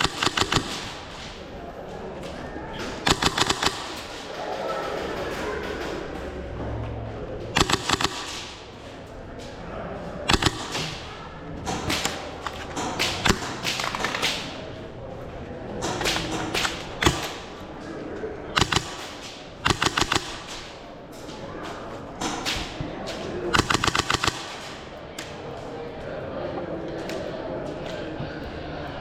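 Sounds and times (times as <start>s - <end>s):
airsoft guns firing: 0.0s - 1.5s, 2.8s - 5.1s, 7.5s - 9.0s, 10.3s - 14.9s, 15.8s - 17.8s, 18.5s - 20.9s, 22.2s - 25.4s.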